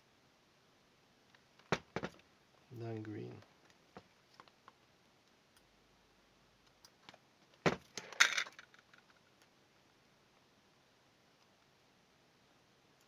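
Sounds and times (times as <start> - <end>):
small hard objects clattering: 7.6 - 9.3.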